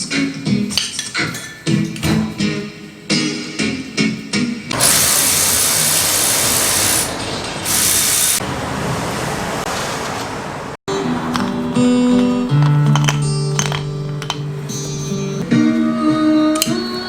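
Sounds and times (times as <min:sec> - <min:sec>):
pressurized air jet hissing: 0:04.8 - 0:08.4.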